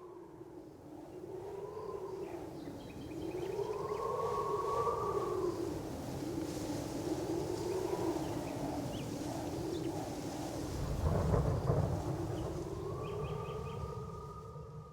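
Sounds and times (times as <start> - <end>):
low rolling thunder: 10.8 - 14.9.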